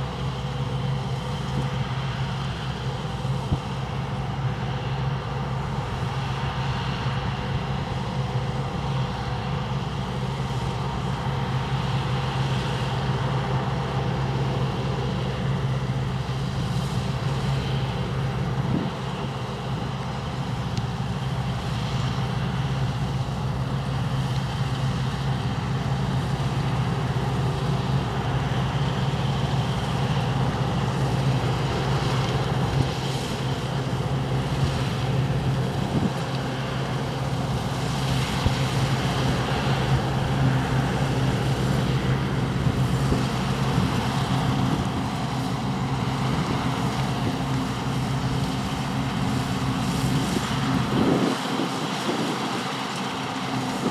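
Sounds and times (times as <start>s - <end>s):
diesel farm machinery running: 0.0s - 53.9s.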